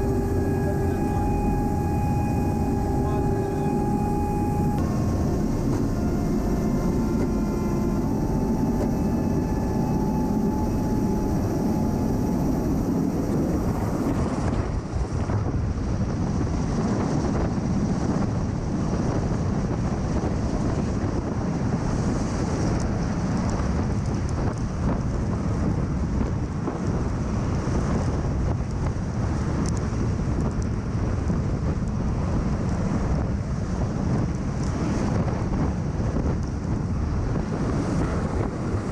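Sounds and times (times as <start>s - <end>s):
steady whining tones: 0.0s - 15.0s
aircraft rotor and engine noise: 0.0s - 38.9s
wind buffeting microphone: 0.0s - 38.9s.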